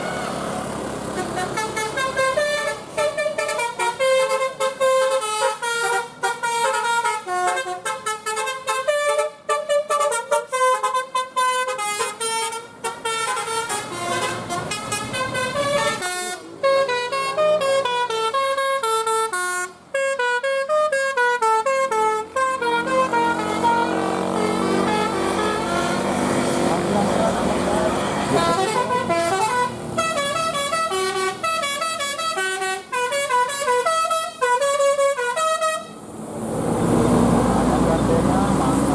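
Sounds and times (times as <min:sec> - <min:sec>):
musical bus horn melody: 0:00.0 - 0:36.0
low engine rumble: 0:36.0 - 0:38.9.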